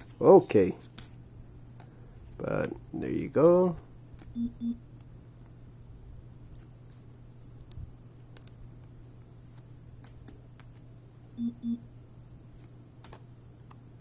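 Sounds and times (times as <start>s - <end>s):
low steady hum: 0.0s - 14.0s
short electronic beeps: 4.4s - 4.8s, 11.4s - 11.8s.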